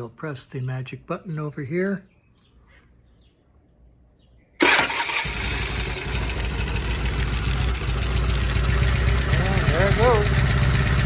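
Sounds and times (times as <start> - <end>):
motorcycle engine starting and running: 4.6 - 11.0.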